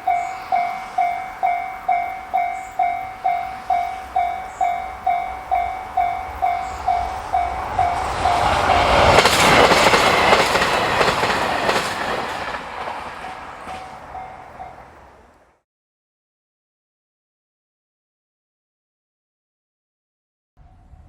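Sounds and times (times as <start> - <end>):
level crossing bell dinging: 0.0 - 8.6
train rumble and wheel clatter: 0.0 - 15.6, 20.6 - 21.0.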